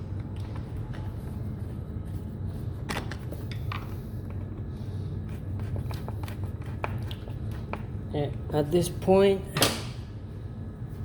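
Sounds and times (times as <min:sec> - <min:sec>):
steady low hum: 0:00.0 - 0:11.0.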